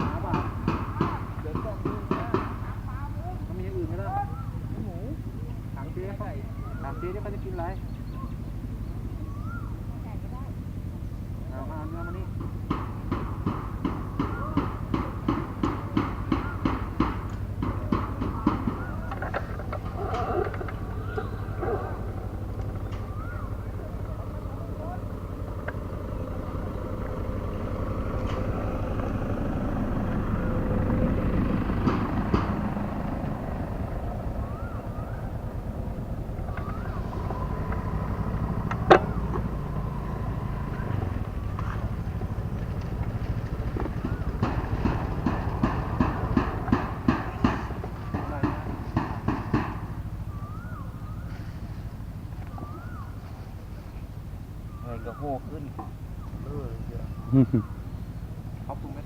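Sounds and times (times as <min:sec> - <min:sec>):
short knocks: 0:00.0 - 0:04.1, 0:12.2 - 0:51.2
faint voices: 0:00.0 - 0:59.0
low motor-like hum: 0:00.0 - 0:59.0.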